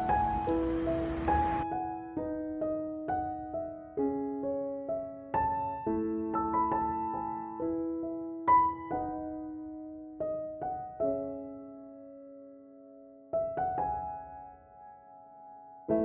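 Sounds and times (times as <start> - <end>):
slow gentle piano: 0.0 - 16.0.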